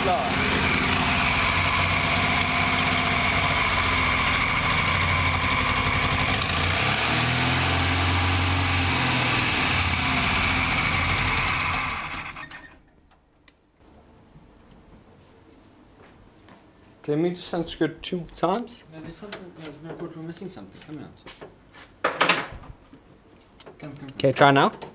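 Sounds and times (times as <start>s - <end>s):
car engine idling and stalling: 0.0s - 12.8s.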